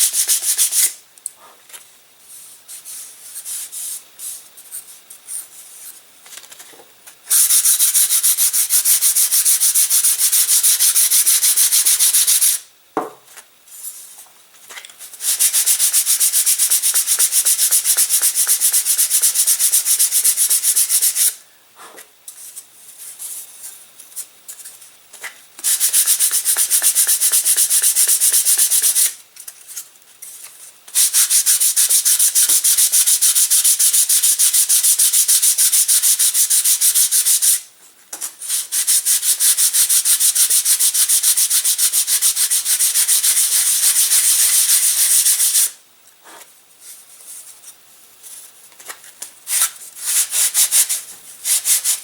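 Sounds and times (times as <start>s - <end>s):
sandpaper sanding wood: 0.0s - 1.0s, 7.3s - 12.6s, 15.2s - 21.4s, 25.6s - 29.2s, 31.0s - 37.6s, 38.4s - 45.8s, 49.5s - 52.0s.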